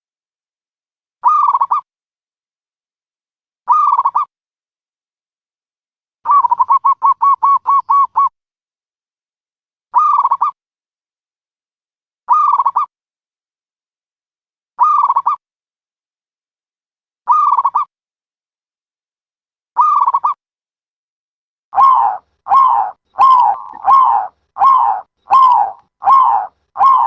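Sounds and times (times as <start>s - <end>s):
dove cooing: 21.8s - 27.0s.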